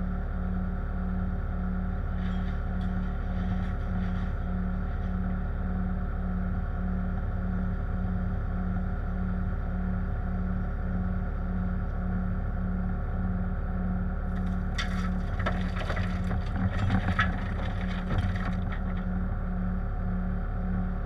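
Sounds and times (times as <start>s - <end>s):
diesel engine running: 0.0s - 21.0s
rock scraping and clattering: 14.3s - 19.2s.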